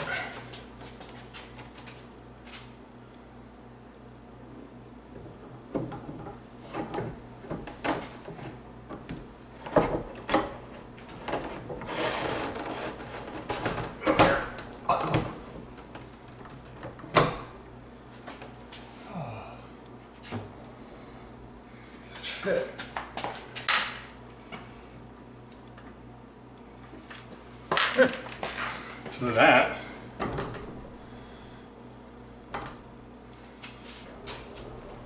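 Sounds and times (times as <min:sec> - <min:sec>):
barn door rolling on track: 0:05.2 - 0:17.3, 0:34.0 - 0:35.0.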